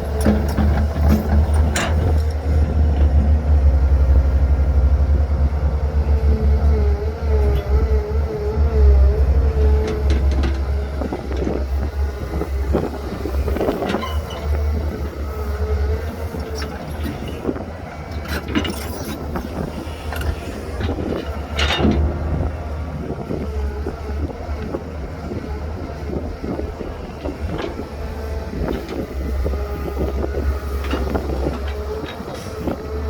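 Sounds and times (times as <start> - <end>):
machinery knocks and clanks: 0.0 - 3.6, 9.5 - 15.3, 15.9 - 33.0
heavy diesel machinery rumbling: 0.0 - 33.0.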